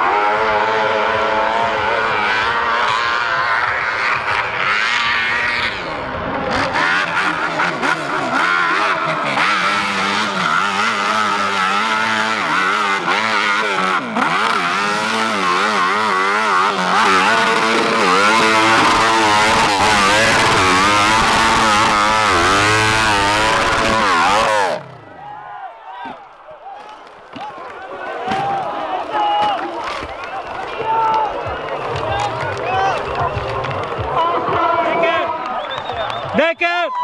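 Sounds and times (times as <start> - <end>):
motorcycle engines revving: 0.0 - 26.4, 27.0 - 36.4.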